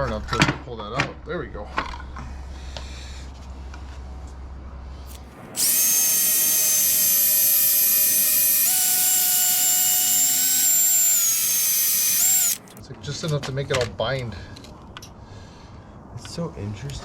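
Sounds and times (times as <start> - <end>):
power drill whining: 5.1 - 12.8.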